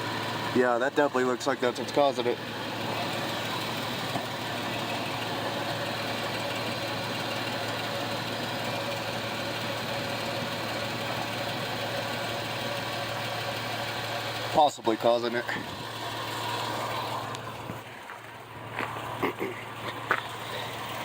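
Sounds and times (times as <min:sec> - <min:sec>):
truck engine idling: 0:00.0 - 0:21.0.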